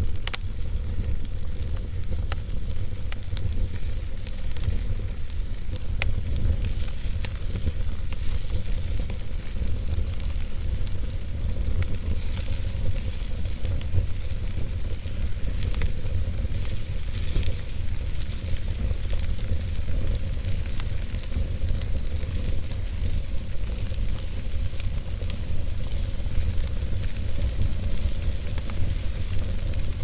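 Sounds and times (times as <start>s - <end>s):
wood fire crackling: 0.0s - 30.0s.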